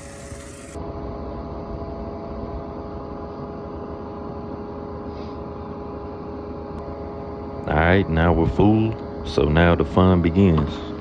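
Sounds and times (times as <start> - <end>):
truck engine running: 0.0 - 0.8.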